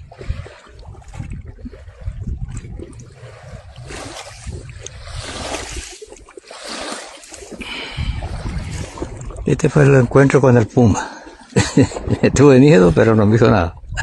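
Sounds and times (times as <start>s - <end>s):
river water rushing: 5.0s - 9.8s.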